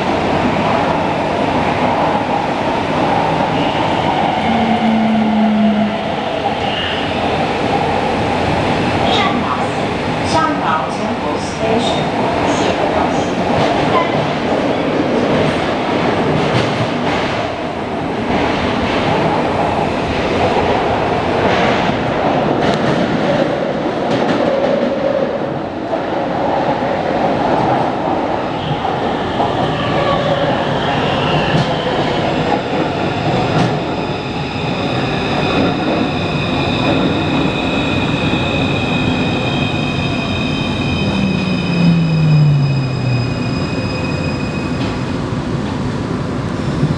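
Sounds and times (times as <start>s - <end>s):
train rumbling on track: 0.0s - 46.9s
low motor tone falling in pitch: 4.5s - 6.0s.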